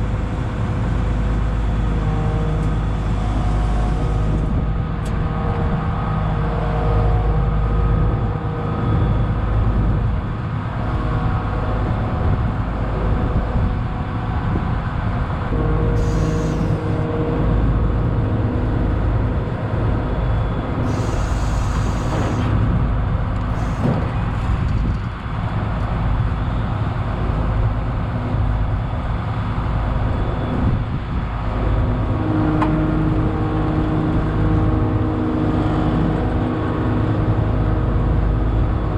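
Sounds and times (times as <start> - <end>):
diesel engine running: 0.0 - 38.9
short hisses: 16.0 - 17.0, 20.9 - 22.5.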